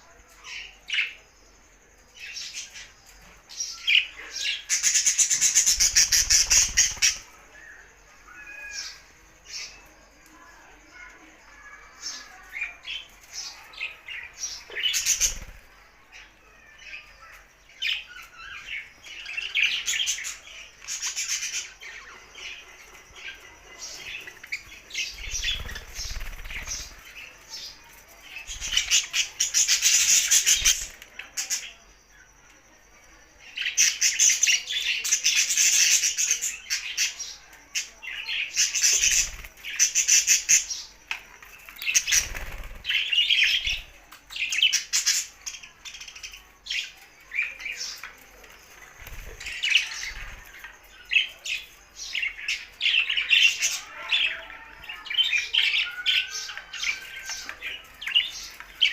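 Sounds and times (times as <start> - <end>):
budgerigars chattering and chirping: 4.1 - 7.4, 19.4 - 27.8, 28.4 - 31.8.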